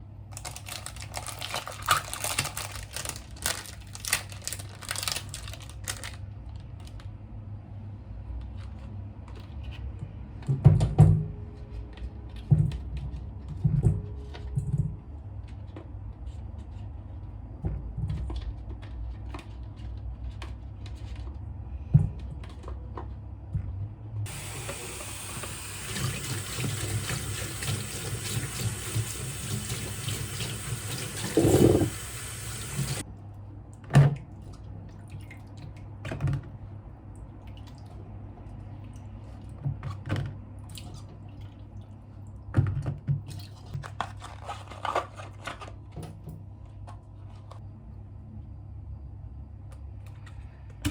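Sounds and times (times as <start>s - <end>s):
tap running water: 24.3s - 33.0s.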